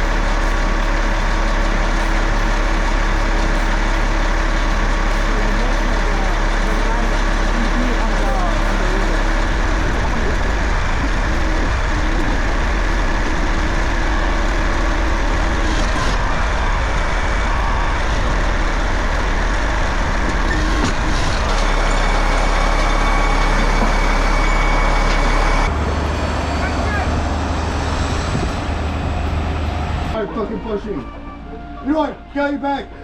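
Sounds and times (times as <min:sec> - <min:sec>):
large engine running: 0:00.0 - 0:33.0.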